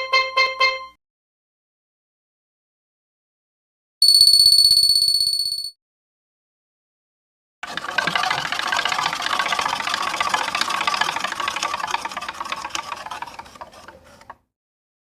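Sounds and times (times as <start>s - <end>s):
prize wheel flapper clicking: 7.6s - 14.4s.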